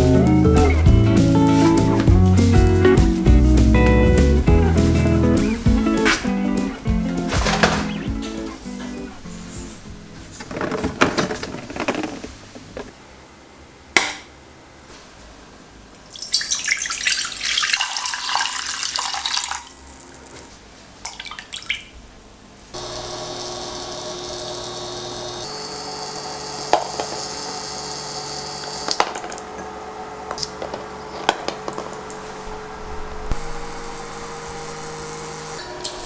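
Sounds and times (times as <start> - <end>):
electric motor hum: 0.0 - 12.2, 22.8 - 36.0
tap water running: 16.1 - 21.9, 22.8 - 29.5, 33.3 - 36.0
water splashes: 16.1 - 22.0.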